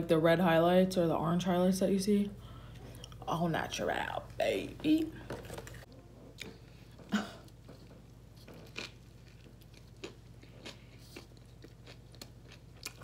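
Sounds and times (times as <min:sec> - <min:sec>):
person chewing food: 0:05.5 - 0:13.0.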